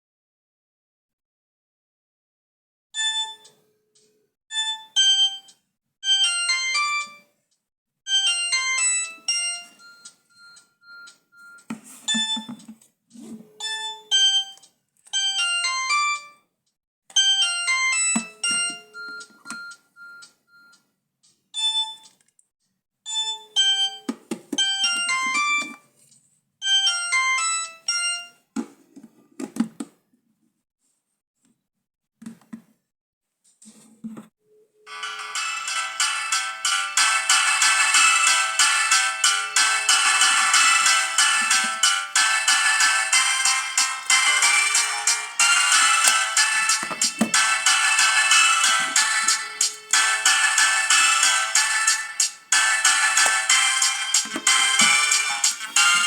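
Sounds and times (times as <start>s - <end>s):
mobile phone ringtone melody: 4.7s - 7.2s, 8.1s - 12.6s, 15.2s - 16.4s, 17.2s - 20.2s, 23.2s - 25.8s, 26.6s - 28.4s, 34.9s - 56.0s.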